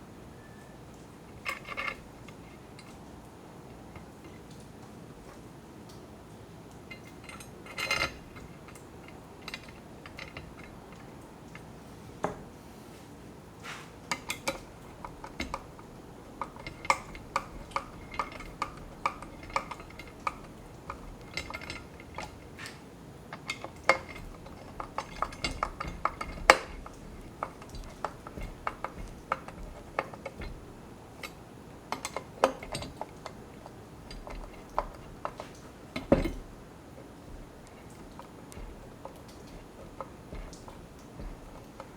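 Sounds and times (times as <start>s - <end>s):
hand tools clinking: 6.9s - 11.8s, 13.6s - 41.9s.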